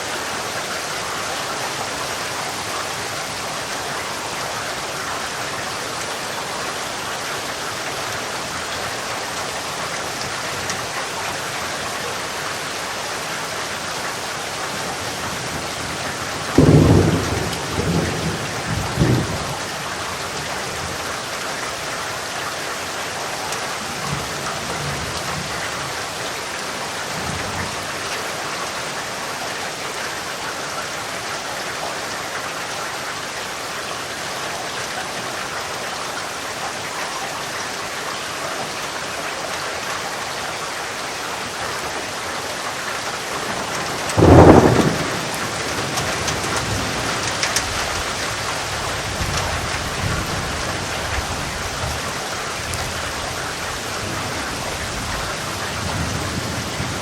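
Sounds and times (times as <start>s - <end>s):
steady rain: 0.0s - 57.0s
thunder rumbling: 16.3s - 19.7s, 43.3s - 52.0s
thunderclap: 43.4s - 51.2s.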